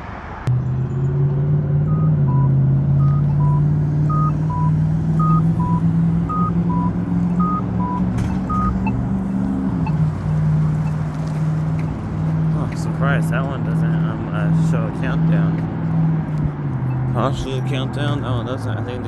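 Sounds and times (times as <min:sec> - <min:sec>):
large vehicle engine running: 0:00.3 - 0:19.0
two-tone electronic beeps: 0:01.8 - 0:11.4, 0:16.8 - 0:17.5.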